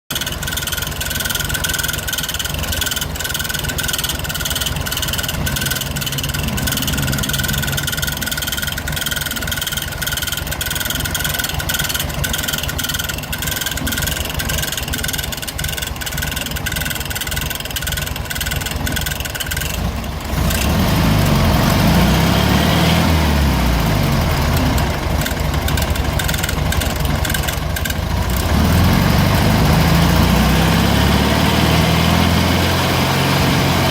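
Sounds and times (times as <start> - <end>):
rapid metallic clicking: 0.1 - 20.7, 23.9 - 28.8
car engine idling: 0.1 - 33.9.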